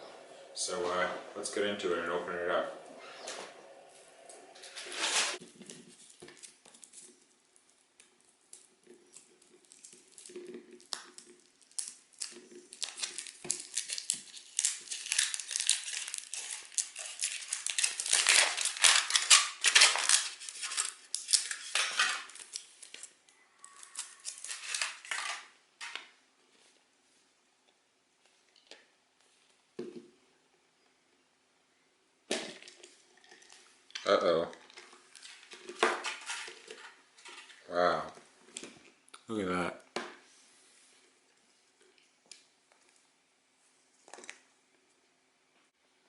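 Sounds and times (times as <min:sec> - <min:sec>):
foil wrapper crinkling: 0:04.6 - 0:25.5, 0:34.6 - 0:37.6.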